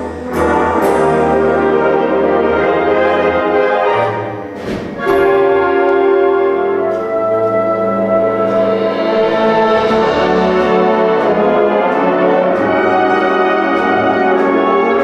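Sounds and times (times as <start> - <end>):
concert band brass and wind chords: 0.0 - 15.0
percussion strikes: 0.0 - 15.0.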